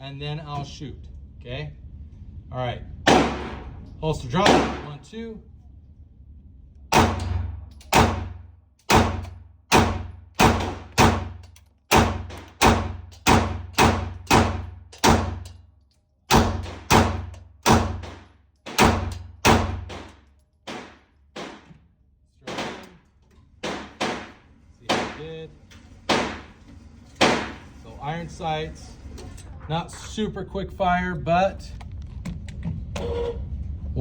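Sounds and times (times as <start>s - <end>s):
pistol shots echoing: 3.1s - 3.7s, 4.4s - 5.0s, 6.9s - 15.5s, 16.3s - 21.6s, 23.6s - 25.2s, 26.1s - 26.5s, 27.2s - 27.6s.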